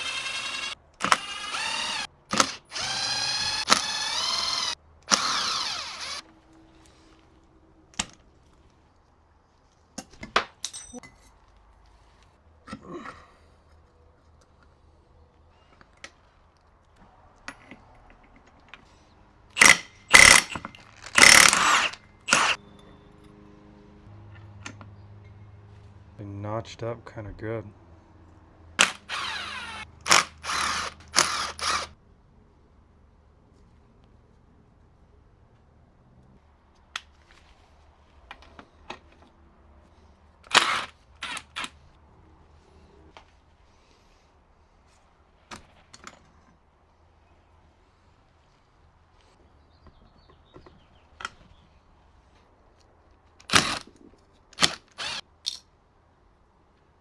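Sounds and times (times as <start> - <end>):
mechanical tool rattling: 19.6 - 22.6, 54.6 - 55.7.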